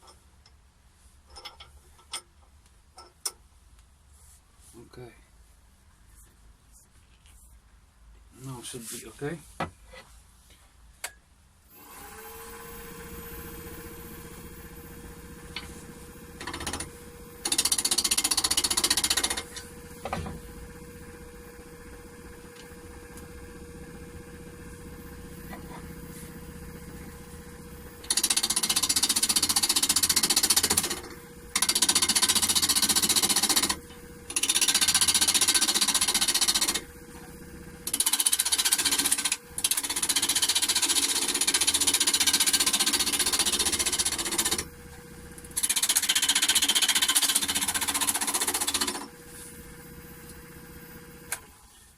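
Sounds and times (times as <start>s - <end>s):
wood lathe humming: 11.8s - 50.4s
turning tool cutting wood: 15.5s - 19.8s, 27.9s - 36.8s, 37.8s - 44.7s, 45.4s - 49.1s.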